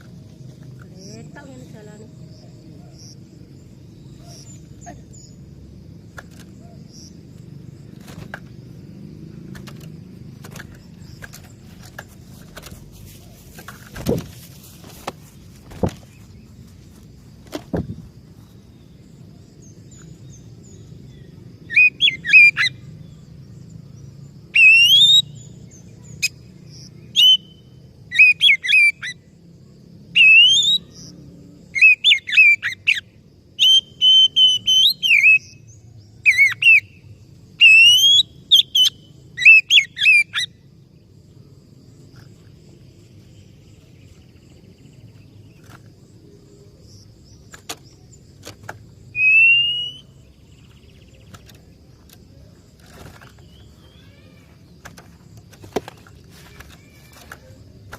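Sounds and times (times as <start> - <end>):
bird singing whistled phrases: 21.7 - 22.8, 27.2 - 29.1, 30.2 - 30.9, 33.6 - 35.7, 37.6 - 40.5, 49.2 - 50.1.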